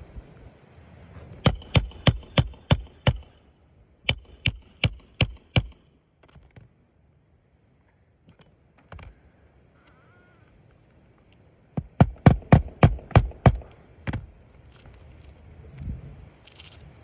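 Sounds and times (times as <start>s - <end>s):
hammer driving roofing nails: 1.5s - 3.4s, 4.1s - 5.8s, 11.8s - 14.3s.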